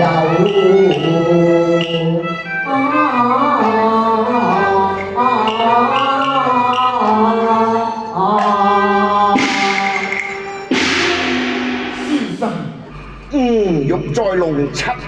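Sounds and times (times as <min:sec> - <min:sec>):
opera singing: 0:00.0 - 0:10.6
accompanying band: 0:00.0 - 0:12.9
percussion crash: 0:09.3 - 0:12.6.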